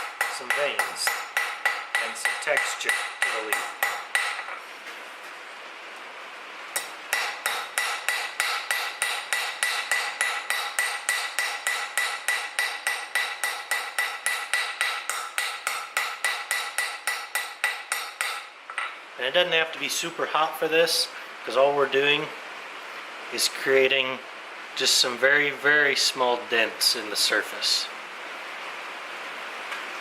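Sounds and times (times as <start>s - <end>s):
hammer tapping on anvil: 0.0s - 4.6s, 6.8s - 19.0s.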